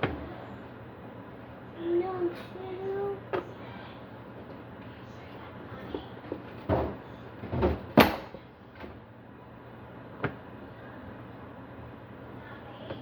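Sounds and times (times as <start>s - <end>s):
kitchen knocks and thuds: 6.6s - 8.4s.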